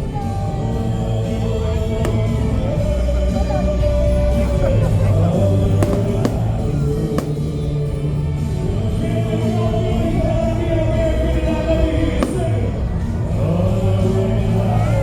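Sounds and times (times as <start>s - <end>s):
choir-like music: 0.0s - 15.0s
firework cracks: 2.0s - 3.0s, 5.8s - 7.9s, 12.2s - 13.0s.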